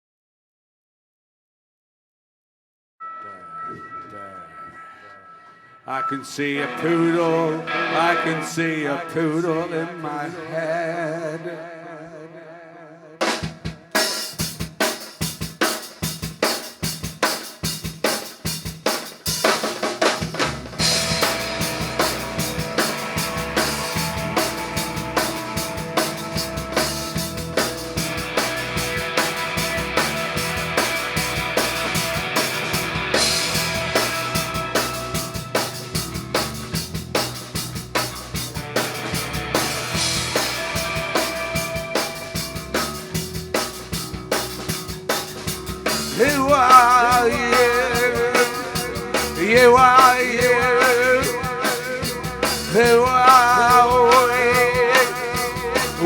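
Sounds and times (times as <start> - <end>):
droning bass and guitars: 6.2 - 9.9, 20.8 - 56.0
drum kit beat: 13.2 - 56.0.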